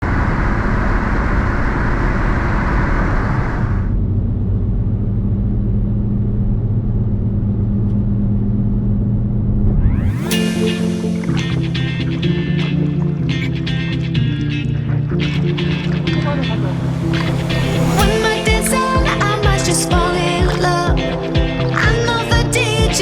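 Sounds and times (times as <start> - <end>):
vehicle engine rumble: 1.4 - 10.4, 11.0 - 22.5
music: 10.0 - 23.0.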